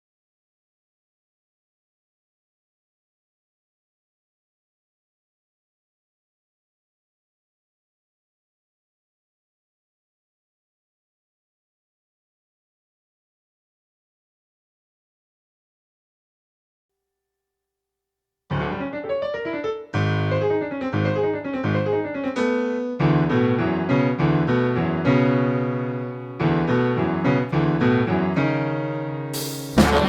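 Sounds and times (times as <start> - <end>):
jazz piano chords: 18.5 - 30.0
big band burst: 29.4 - 30.0.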